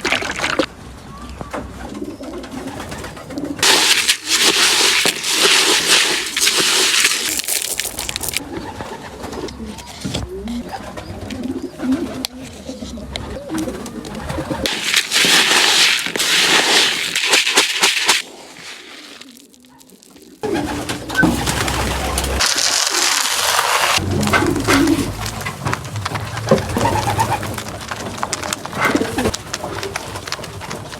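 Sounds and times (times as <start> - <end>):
rustling noise: 3.6 - 8.4, 14.6 - 30.9
pigeons cooing: 24.0 - 27.8.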